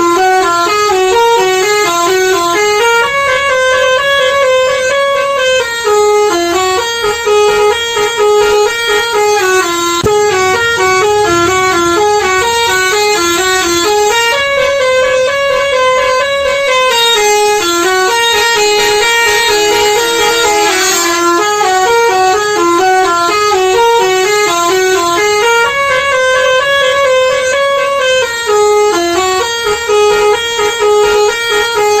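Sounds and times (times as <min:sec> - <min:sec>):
multi-tone musical air horn: 0:00.0 - 0:32.0.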